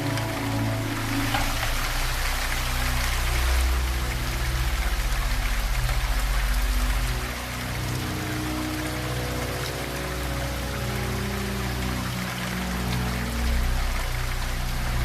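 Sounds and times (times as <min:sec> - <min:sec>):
low sustained pad tones: 0:00.0 - 0:15.0
steady rain: 0:00.0 - 0:15.0.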